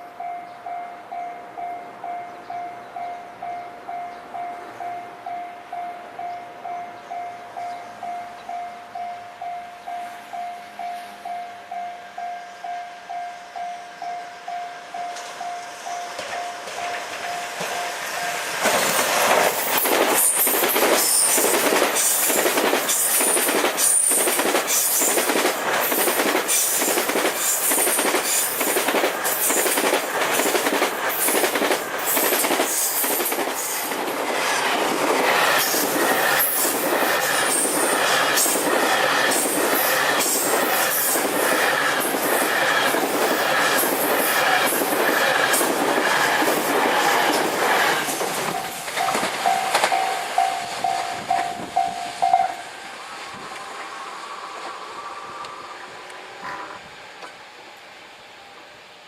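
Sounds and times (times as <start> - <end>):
train wheels clicking on rail joints: 13.9 - 57.9.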